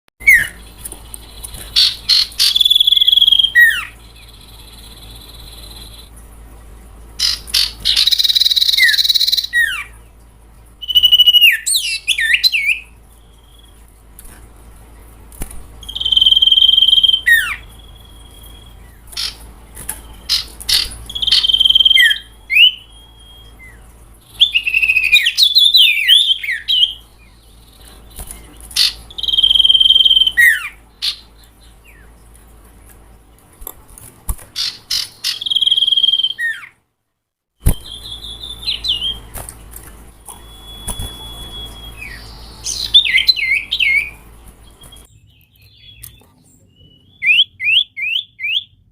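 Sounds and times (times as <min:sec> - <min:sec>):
owlet harsh chattering calls: 0:01.6 - 0:04.0, 0:07.2 - 0:09.9, 0:19.2 - 0:19.5, 0:20.2 - 0:22.8, 0:28.8 - 0:31.2, 0:34.6 - 0:36.6.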